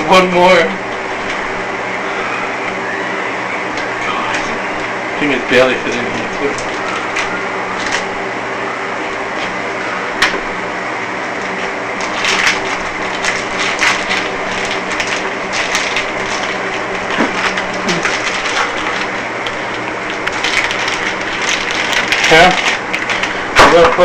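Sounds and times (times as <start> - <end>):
steady low hum: 0.0 - 24.0
plastic packaging crinkling: 3.8 - 8.2, 11.9 - 24.0.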